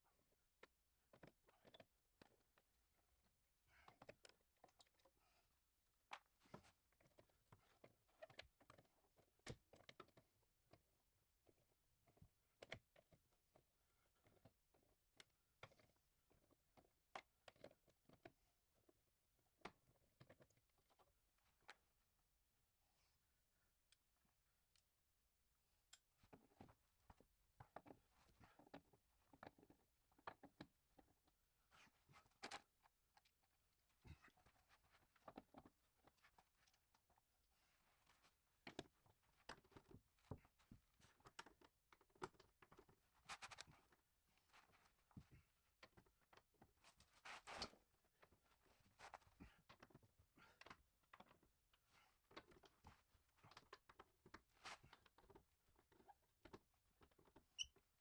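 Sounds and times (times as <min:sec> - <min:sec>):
faint small clicks and taps: 0:06.1 - 0:10.8, 0:11.4 - 0:21.9, 0:38.0 - 0:48.4, 0:49.0 - 0:57.9.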